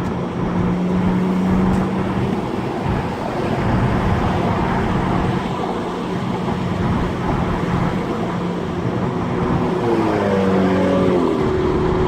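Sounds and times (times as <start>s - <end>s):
car engine driving: 0.0s - 12.0s
road noise: 0.0s - 12.0s.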